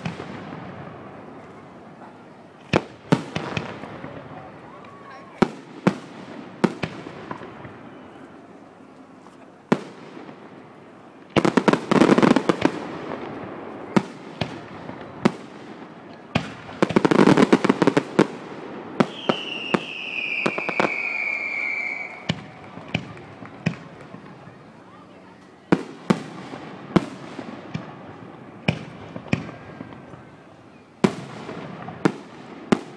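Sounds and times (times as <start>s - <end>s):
firework bangs: 0.0s - 8.5s, 9.6s - 32.9s
crackling firework bursts: 0.0s - 32.9s
high firework whistle: 19.0s - 23.2s.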